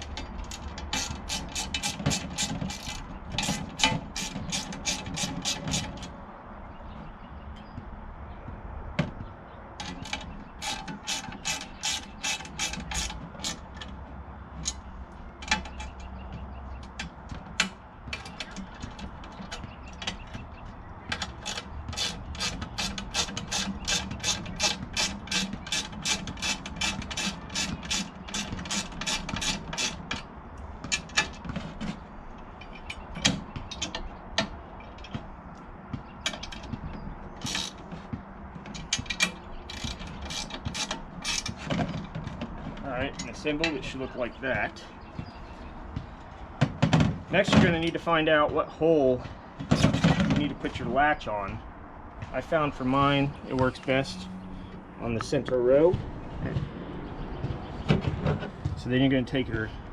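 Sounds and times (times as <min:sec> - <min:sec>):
hand ratchet clicking: 0:09.9 - 0:13.6, 0:21.2 - 0:30.0, 0:38.8 - 0:41.6.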